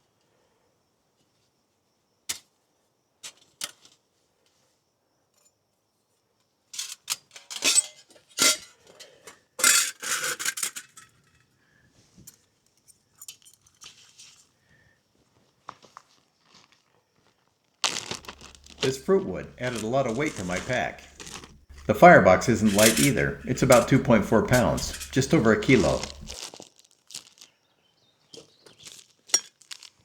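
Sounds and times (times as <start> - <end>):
metal camp stove clinking: 18.3 - 26.4.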